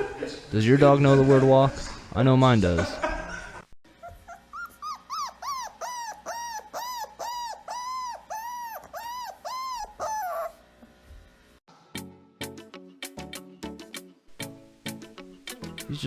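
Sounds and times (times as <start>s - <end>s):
dog whining: 3.9s - 10.7s.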